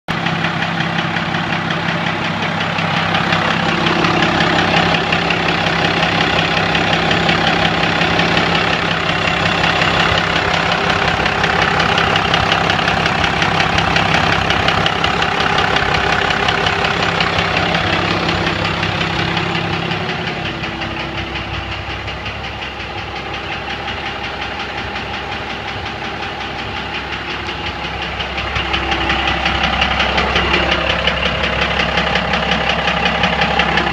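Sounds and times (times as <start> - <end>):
diesel engine idling with knock: 0.1 - 33.9.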